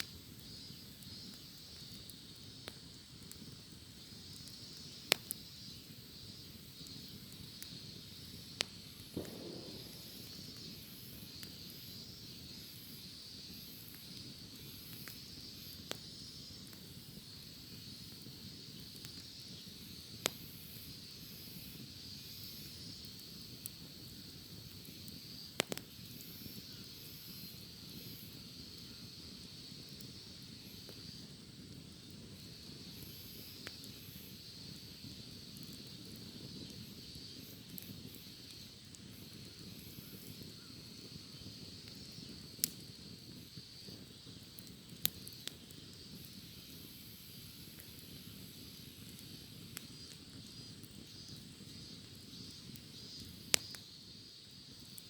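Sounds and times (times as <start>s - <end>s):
cicadas chorus: 0.0s - 55.0s
wood fire crackling: 0.0s - 55.0s.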